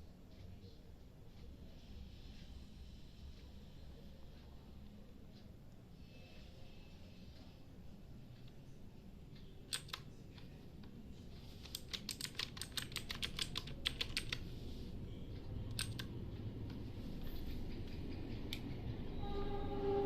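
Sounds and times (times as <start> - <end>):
mechanical keyboard typing: 9.7 - 10.5, 11.5 - 14.5, 15.6 - 16.1.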